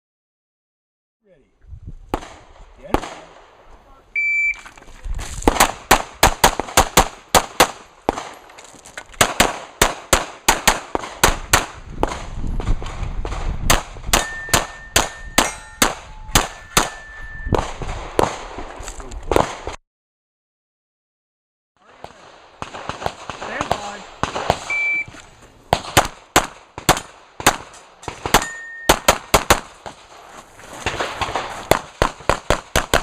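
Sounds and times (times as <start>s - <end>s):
pistol shots: 2.1s - 3.4s, 5.5s - 8.4s, 9.2s - 12.3s, 13.3s - 18.7s, 22.0s - 24.7s, 25.7s - 30.1s, 30.9s - 33.0s
steel targets clanging: 14.2s - 17.4s.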